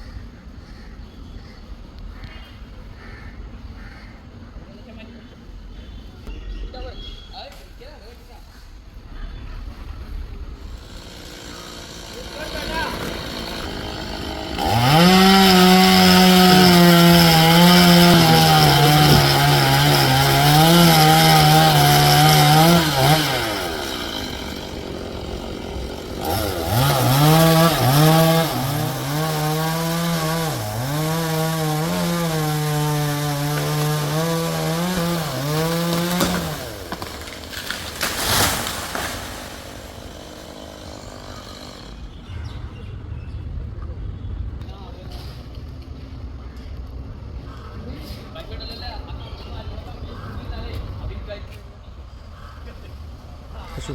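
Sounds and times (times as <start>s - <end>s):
chainsaw cutting wood: 10.8s - 42.1s.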